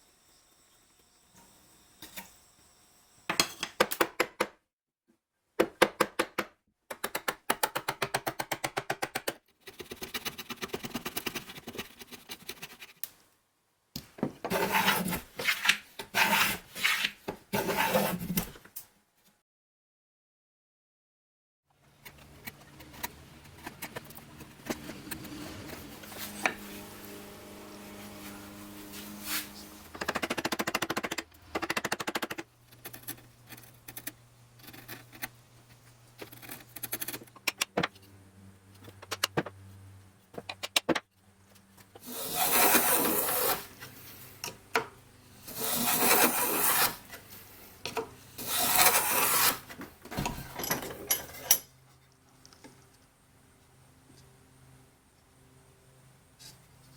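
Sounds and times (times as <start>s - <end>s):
knocks and clicks on wood: 5.6s - 9.4s
tool rasping on wood: 14.5s - 18.2s, 42.0s - 43.7s, 45.4s - 47.1s, 48.4s - 49.7s.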